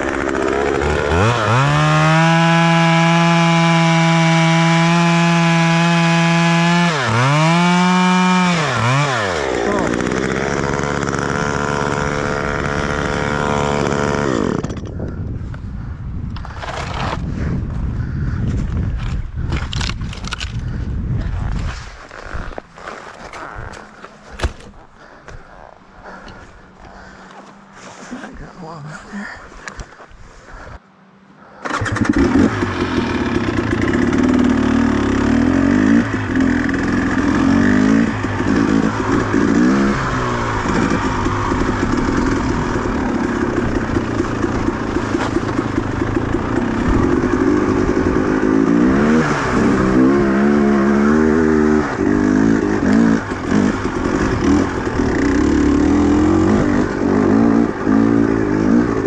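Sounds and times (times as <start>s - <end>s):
small two-stroke engine revving: 0.0s - 15.1s, 31.6s - 59.0s.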